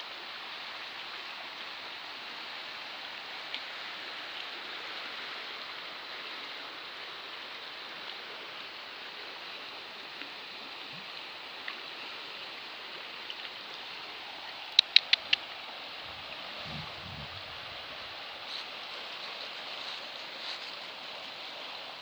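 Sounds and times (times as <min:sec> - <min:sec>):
river water rushing: 0:04.6 - 0:22.0
faint ticks: 0:13.2 - 0:21.5.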